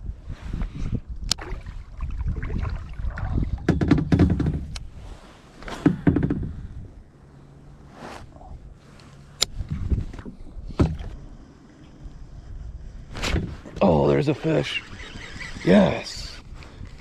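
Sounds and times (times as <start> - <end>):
knocks on kayak hull: 3.6 - 4.7, 5.8 - 6.5.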